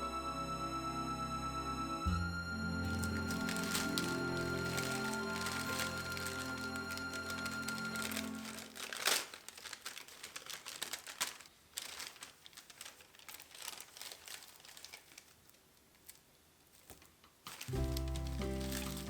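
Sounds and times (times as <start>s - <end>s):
background music: 0.0s - 9.0s, 17.7s - 19.0s
onions crinkling and rustling: 2.8s - 19.0s.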